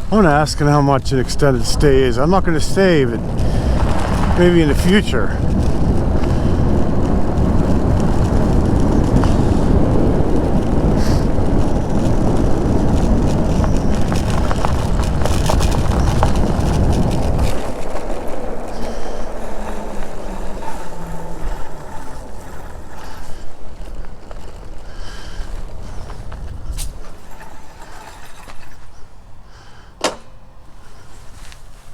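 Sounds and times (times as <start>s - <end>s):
outdoor background sound: 0.0s - 31.9s
wind buffeting microphone: 0.0s - 31.9s.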